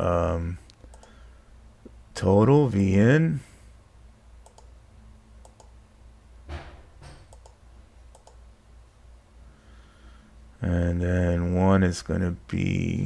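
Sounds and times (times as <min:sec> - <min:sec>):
faint low hum: 0:00.0 - 0:13.0
computer mouse clicks: 0:00.7 - 0:01.2, 0:04.4 - 0:04.7, 0:05.4 - 0:05.8, 0:07.3 - 0:08.4.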